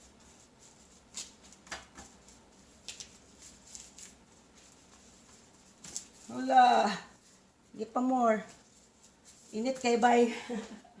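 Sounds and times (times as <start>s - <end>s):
handling ticks and rustles: 0.0s - 6.5s.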